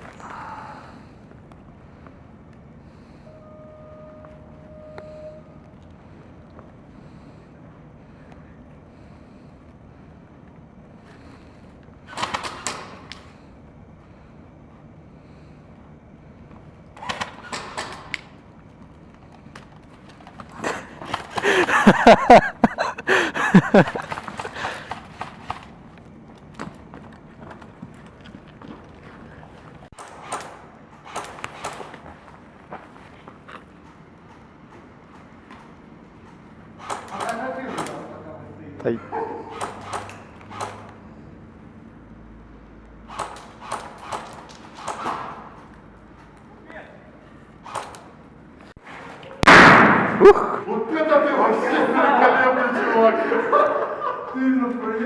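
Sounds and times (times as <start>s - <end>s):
footsteps: 15.8s - 38.1s.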